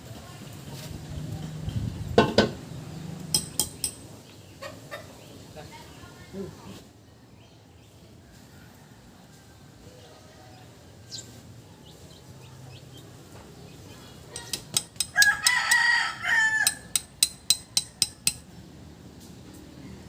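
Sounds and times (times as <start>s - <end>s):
rooster crowing: 15.0s - 17.1s.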